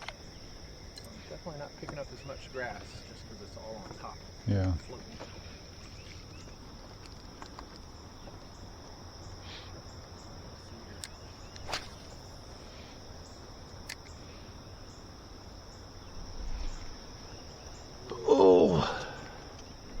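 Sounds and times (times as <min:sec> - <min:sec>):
crickets trilling: 0:00.0 - 0:20.0
sharp clicks: 0:13.8 - 0:14.2.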